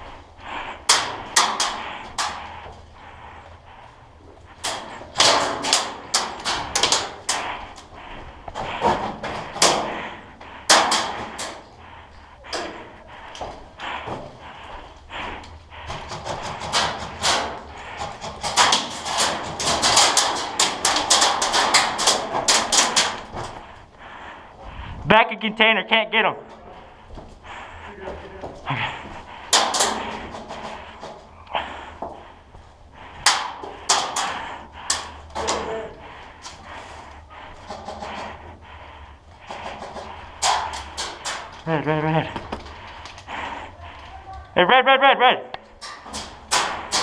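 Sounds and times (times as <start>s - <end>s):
sharp clacks and knocks: 0.8s - 2.7s, 4.6s - 11.7s, 15.4s - 23.7s, 29.4s - 32.2s, 45.7s - 47.0s.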